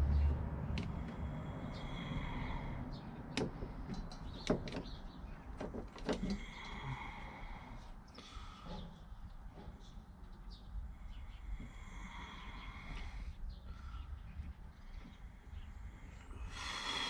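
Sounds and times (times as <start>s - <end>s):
sharp knocks and clicks: 3.3s - 6.4s.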